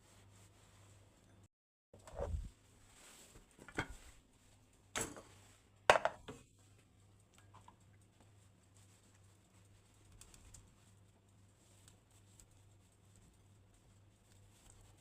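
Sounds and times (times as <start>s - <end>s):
kitchenware knocks and clinks: 5.9s - 6.3s.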